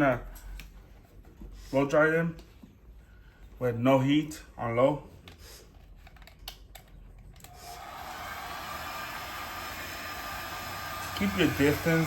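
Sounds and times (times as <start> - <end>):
hair dryer running: 7.5 - 12.0.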